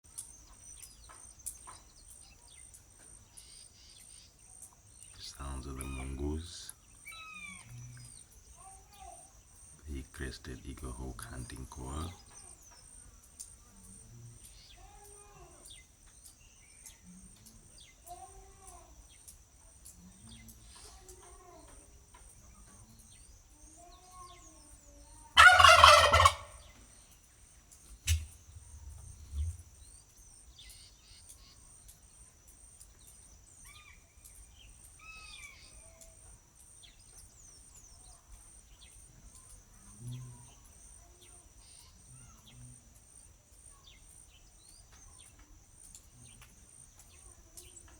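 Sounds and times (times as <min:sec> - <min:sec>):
higher bird chirps: 0:00.1 - 0:17.1, 0:22.5 - 0:32.2
soft repeated bird calls: 0:00.1 - 0:47.9
turkey gobbling: 0:25.4 - 0:26.7, 0:28.1 - 0:28.3.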